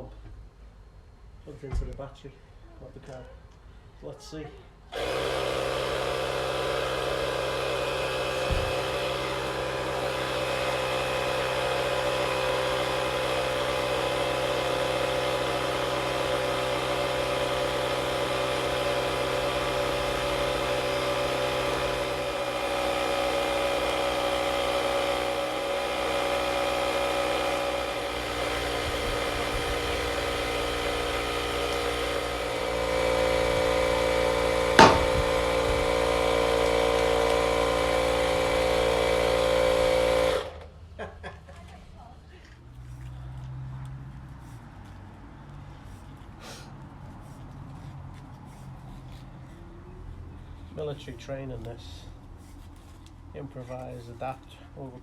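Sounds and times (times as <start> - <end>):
tyre inflation pump humming: 4.9 - 40.8.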